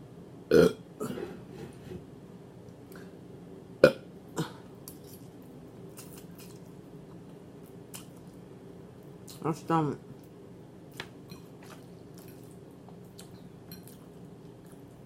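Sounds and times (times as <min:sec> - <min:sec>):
person burping: 0:00.5 - 0:01.3, 0:03.8 - 0:04.7.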